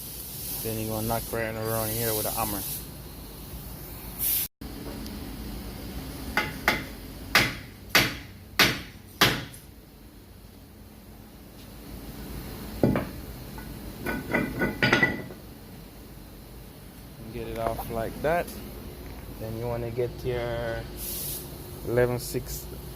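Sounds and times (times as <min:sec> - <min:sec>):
hammer striking brake rotor: 0:06.4 - 0:09.7.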